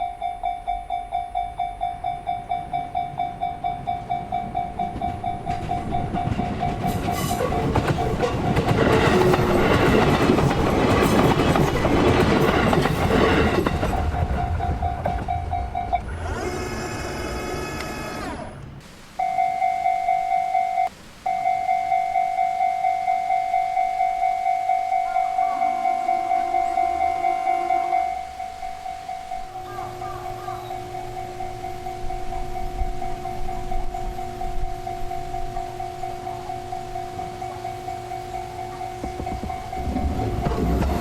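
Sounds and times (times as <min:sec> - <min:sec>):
level-crossing bell ringing: 0:00.0 - 0:16.5, 0:19.2 - 0:41.0
train rumble and wheel noise: 0:00.0 - 0:20.6, 0:22.0 - 0:41.0
sustained pitched tone: 0:19.2 - 0:41.0.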